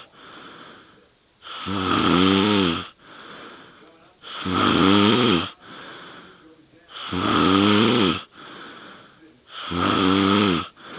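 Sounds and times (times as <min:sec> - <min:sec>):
breathy breaths: 0:00.0 - 0:10.9
man snoring loudly: 0:01.4 - 0:03.0, 0:04.3 - 0:05.6, 0:06.9 - 0:08.3, 0:09.5 - 0:10.9.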